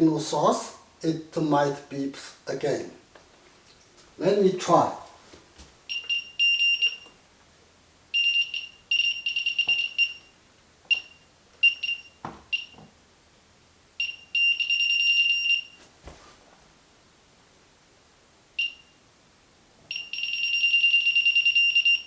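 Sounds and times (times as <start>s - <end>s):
high-pitched detector beeping: 8.2s - 10.3s, 19.9s - 22.0s
soft handling knocks: 15.8s - 16.5s.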